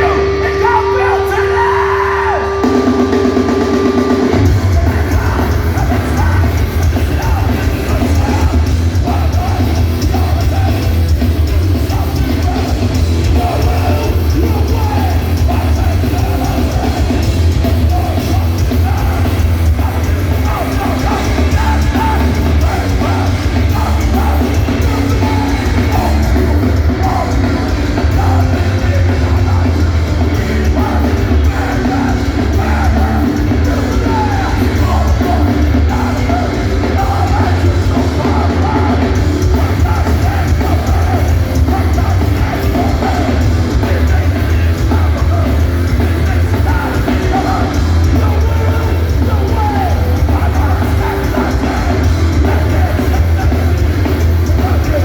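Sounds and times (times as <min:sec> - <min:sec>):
ringing guitar notes: 0:00.0 - 0:05.8
punk band playing: 0:00.0 - 0:55.0
shouted vocals: 0:00.0 - 0:55.0.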